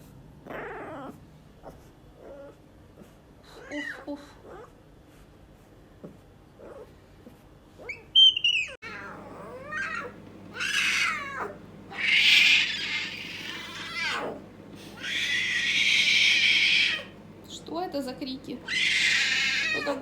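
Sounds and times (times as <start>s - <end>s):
leopard cub crying: 7.8s - 17.2s, 18.6s - 20.0s.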